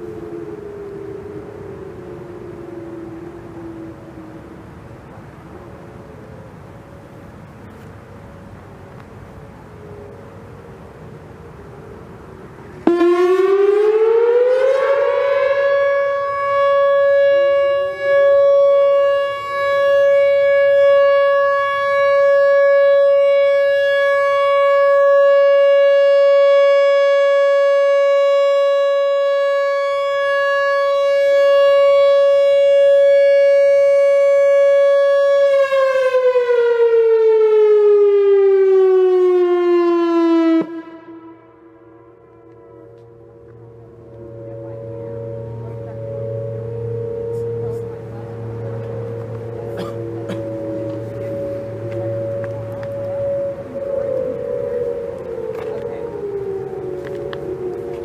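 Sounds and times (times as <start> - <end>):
electronic warning siren: 0.0 - 6.6, 9.7 - 58.0.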